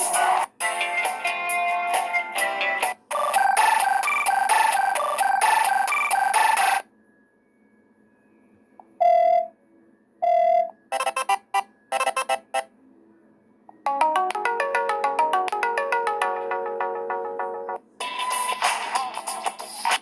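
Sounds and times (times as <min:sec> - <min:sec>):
chiming ringtone melody: 0:02.0 - 0:12.9, 0:13.7 - 0:18.5
synth ringtone melody: 0:02.8 - 0:06.8, 0:10.2 - 0:12.7, 0:13.8 - 0:18.5.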